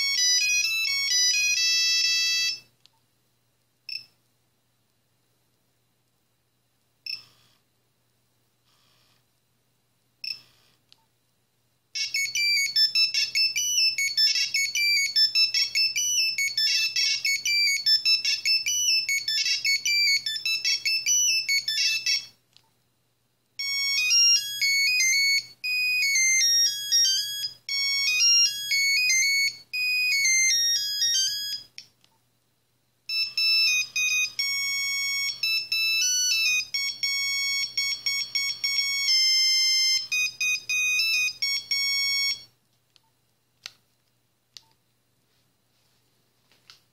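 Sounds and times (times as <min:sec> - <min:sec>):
monophonic phone ringtones: 0:00.0 - 0:02.7, 0:12.0 - 0:22.3, 0:23.6 - 0:31.7, 0:33.1 - 0:42.5.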